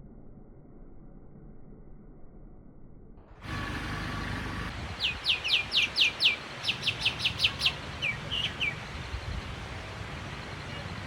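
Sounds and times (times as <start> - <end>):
bird calling in whistled notes: 5.0 - 8.9.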